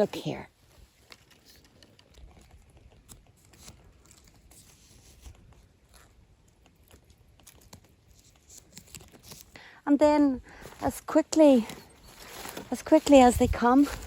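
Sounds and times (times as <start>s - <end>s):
leaf litter and twigs crackling: 10.5s - 14.0s.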